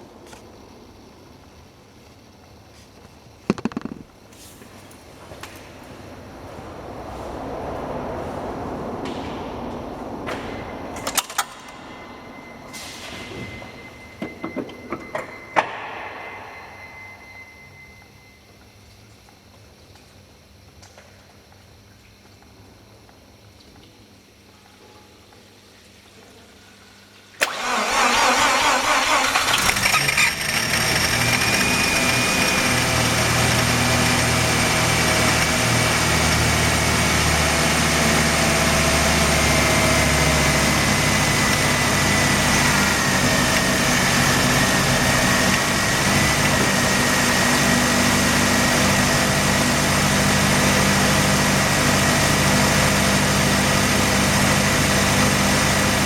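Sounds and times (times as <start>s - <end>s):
engine cranking: 27.4s - 34.3s
engine idling roughly: 27.5s - 37.6s.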